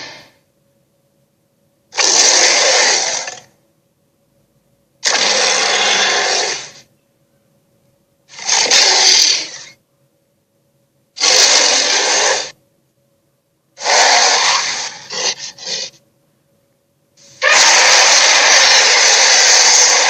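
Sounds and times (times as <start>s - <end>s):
hissing sea monster blasts: 0.0s - 0.4s, 2.0s - 3.4s, 5.0s - 6.8s, 8.3s - 9.7s, 11.2s - 12.6s, 13.8s - 15.9s, 17.2s - 20.0s.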